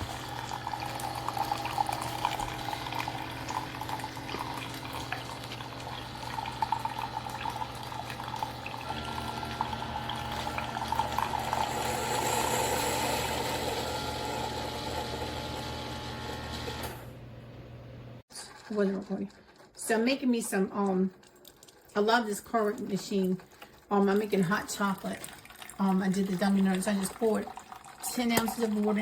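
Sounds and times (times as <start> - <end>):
liquid streaming into cup: 0.0 - 13.9, 21.1 - 29.0
coffee maker pump humming: 0.0 - 20.7, 21.3 - 29.0.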